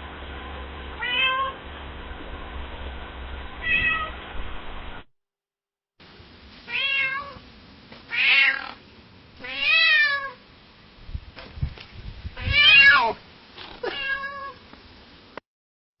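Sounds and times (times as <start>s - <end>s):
cat meowing: 1.0s - 1.6s, 3.6s - 4.2s, 6.7s - 7.4s, 8.1s - 8.8s, 9.4s - 10.4s, 12.4s - 13.2s, 13.8s - 14.6s.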